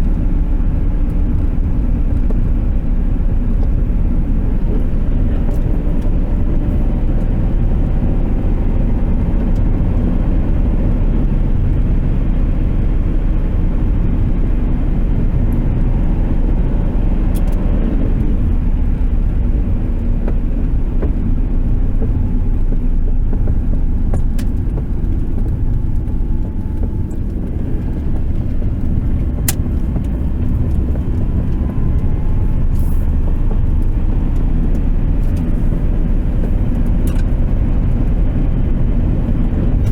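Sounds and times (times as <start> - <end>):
car engine and road rumble: 0.0 - 39.9
sharp pops from dashboard: 15.4 - 39.9.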